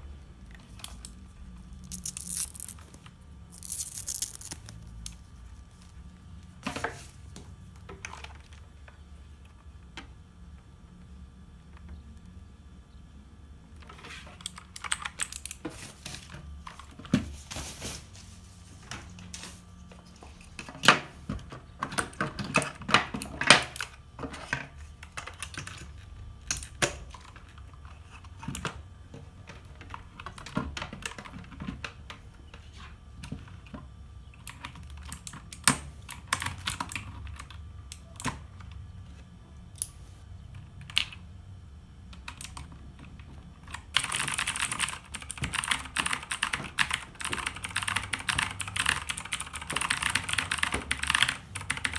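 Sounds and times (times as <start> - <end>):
mechanical keyboard typing clicks: 43.7 - 51.9.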